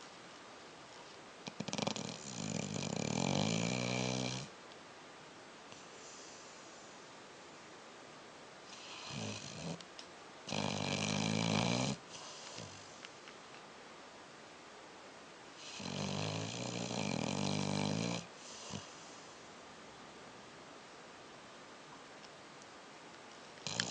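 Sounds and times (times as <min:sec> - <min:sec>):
dog snoring: 0:01.4 - 0:04.6, 0:08.7 - 0:09.8, 0:10.5 - 0:13.0, 0:15.5 - 0:19.3, 0:23.6 - 0:23.9.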